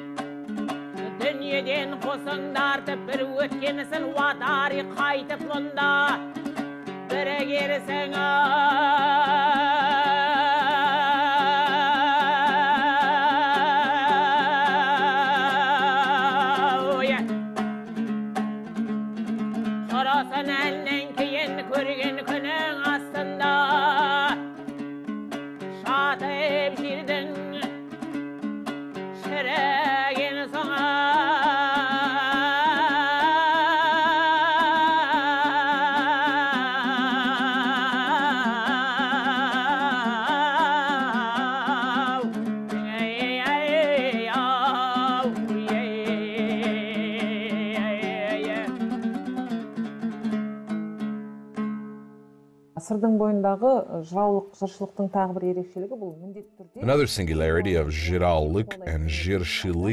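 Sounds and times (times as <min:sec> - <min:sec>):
plucked string accompaniment: 0:00.0 - 0:59.9
person chanting with vibrato: 0:56.8 - 0:59.9.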